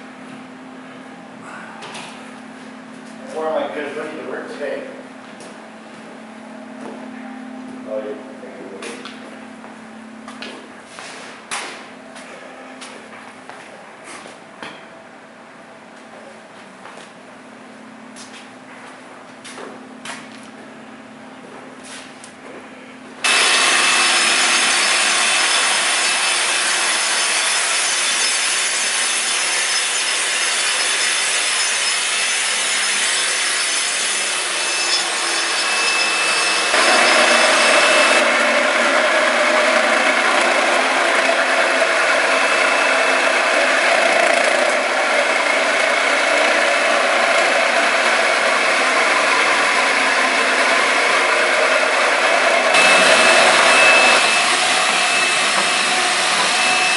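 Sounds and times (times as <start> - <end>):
floor grinder grinding concrete: 22.6 - 56.9.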